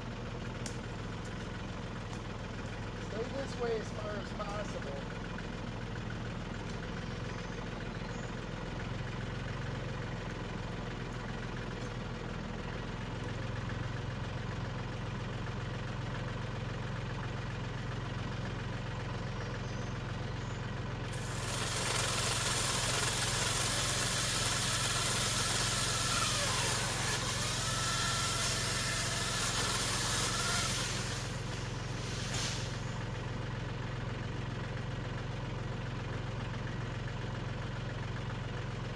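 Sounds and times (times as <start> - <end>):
tractor engine running: 0.0 - 38.9
loud hiss with faint whistling: 30.7 - 33.0.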